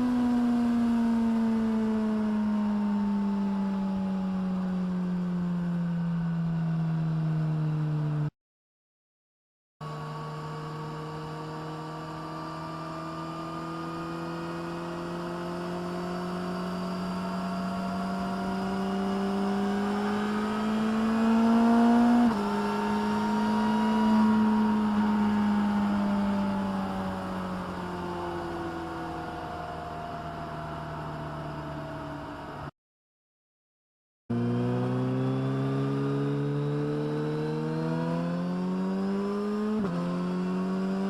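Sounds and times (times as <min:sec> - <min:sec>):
motorcycle engine revving: 0:09.8 - 0:28.0, 0:34.3 - 0:41.0.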